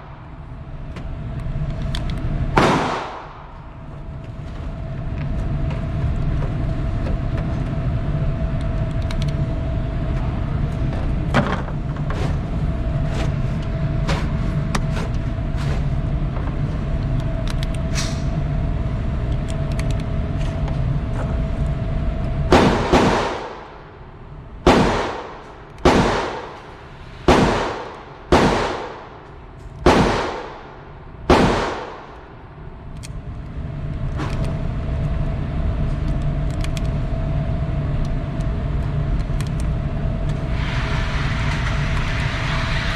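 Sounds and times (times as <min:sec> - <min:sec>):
faint hum: 0:00.0 - 0:42.9
low rumble: 0:00.0 - 0:42.9
echoing gunshots: 0:02.5 - 0:03.6, 0:22.5 - 0:24.0, 0:24.6 - 0:32.6
faint distant shots: 0:24.7 - 0:29.2.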